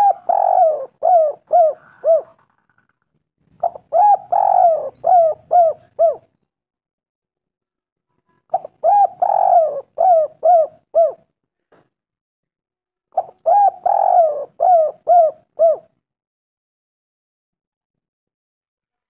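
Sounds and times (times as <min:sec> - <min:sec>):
dove cooing: 0:00.0 - 0:02.6, 0:03.6 - 0:06.4, 0:08.5 - 0:11.3, 0:13.2 - 0:15.9.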